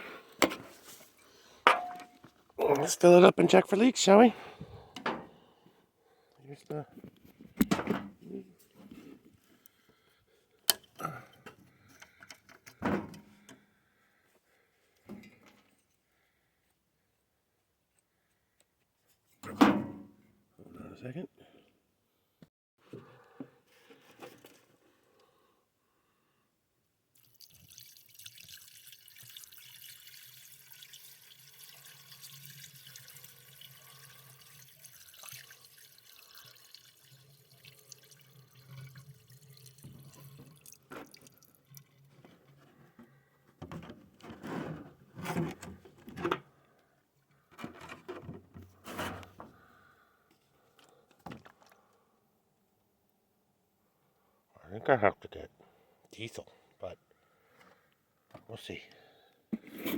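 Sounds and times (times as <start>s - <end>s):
liquid pouring into radiator: 27.2s - 42.2s.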